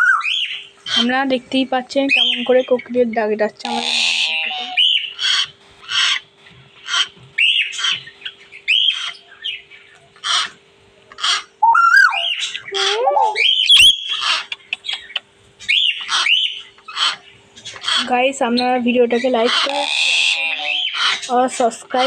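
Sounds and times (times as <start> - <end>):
bird squawking and whistling: 0.0 - 1.0, 3.8 - 6.2, 6.9 - 9.7, 11.2 - 18.1, 19.3 - 21.4.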